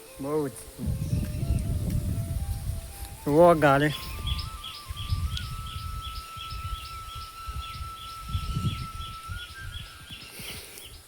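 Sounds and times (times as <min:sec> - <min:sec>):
wind rumble on microphone: 0:00.0 - 0:11.0
whistle-like tone: 0:02.1 - 0:10.6
bird chirping: 0:03.2 - 0:11.0.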